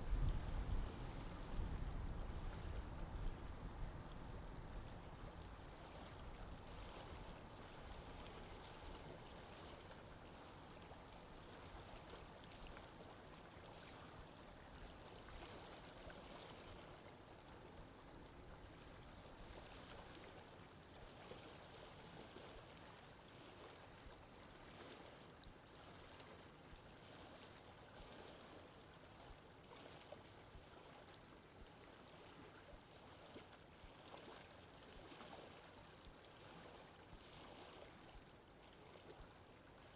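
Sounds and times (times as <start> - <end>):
water trickling gently: 0.0 - 39.9.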